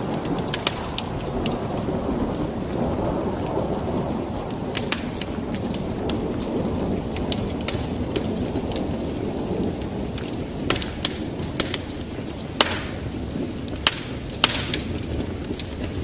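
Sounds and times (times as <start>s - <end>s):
fire crackling and popping: 0.0s - 16.0s
fire roaring: 0.0s - 16.0s.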